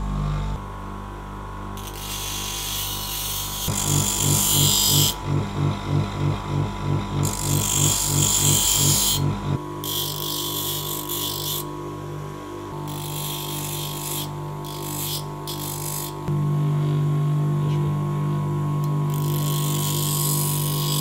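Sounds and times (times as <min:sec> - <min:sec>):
steel blade being ground: 0:01.8 - 0:11.7, 0:12.9 - 0:16.2, 0:19.1 - 0:21.0
electric grinder humming: 0:01.8 - 0:16.4
low throbbing pulse: 0:03.7 - 0:09.6.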